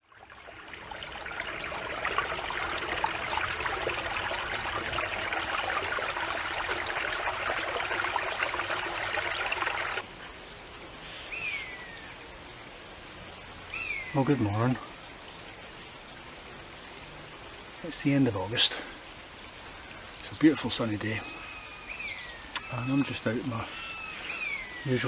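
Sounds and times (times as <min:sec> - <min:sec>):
open-air ambience: 0:00.0 - 0:25.0
stream trickling: 0:00.0 - 0:25.0
falling bird call: 0:11.0 - 0:12.2, 0:13.7 - 0:14.3, 0:21.2 - 0:25.0.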